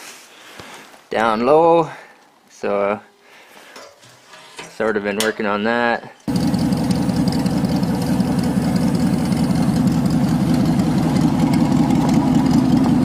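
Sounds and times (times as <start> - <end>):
car engine idling: 6.3 - 13.0.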